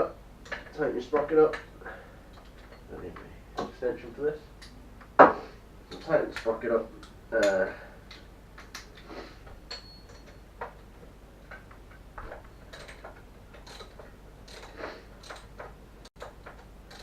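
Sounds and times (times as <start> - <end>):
ratchet wrench clicking: 12.7 - 17.0.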